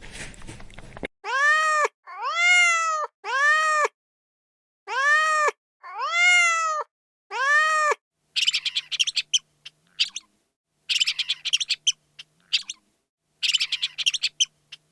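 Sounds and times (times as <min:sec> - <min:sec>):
cat meowing: 0:01.3 - 0:04.0, 0:04.9 - 0:09.0
high-pitched mouse squeaks: 0:08.4 - 0:10.3, 0:10.9 - 0:12.8, 0:13.4 - 0:14.9.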